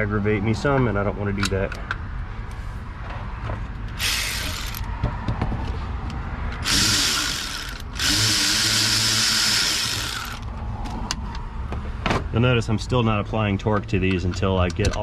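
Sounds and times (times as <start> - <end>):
power tool driving bolts: 3.9 - 4.9, 6.6 - 10.5.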